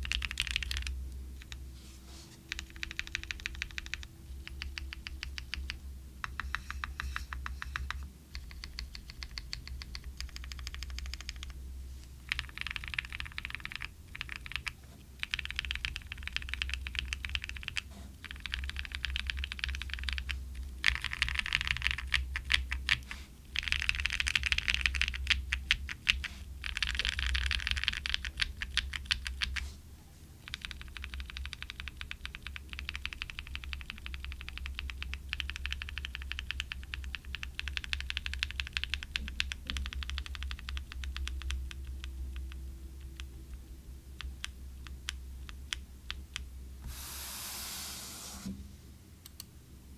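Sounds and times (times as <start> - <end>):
mechanical keyboard typing: 0.0 - 1.6, 2.5 - 11.6, 12.2 - 29.6, 30.4 - 42.5.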